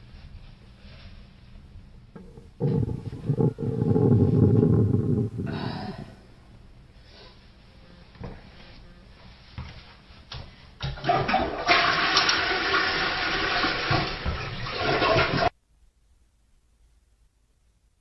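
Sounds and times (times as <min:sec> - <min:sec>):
toilet flushing: 0:10.8 - 0:15.5.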